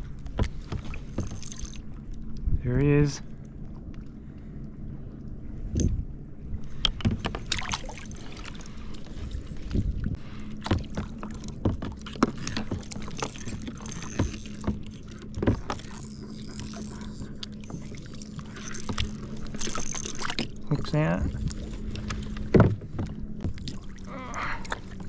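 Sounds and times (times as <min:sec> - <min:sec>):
knocks and rattles in a kayak: 0:00.0 - 0:01.8, 0:06.6 - 0:23.8
faint steady hum: 0:00.0 - 0:25.0.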